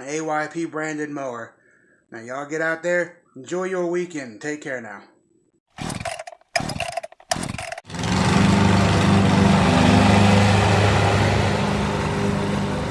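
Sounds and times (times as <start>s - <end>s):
riding lawn mower engine: 5.8s - 12.9s.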